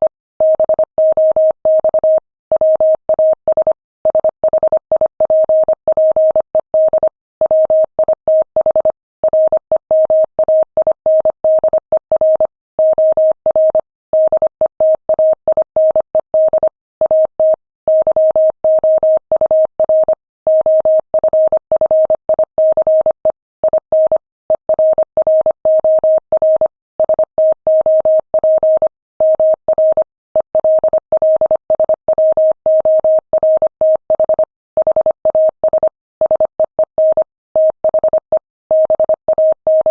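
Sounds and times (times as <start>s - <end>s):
morse code tone: 15.2s - 39.9s.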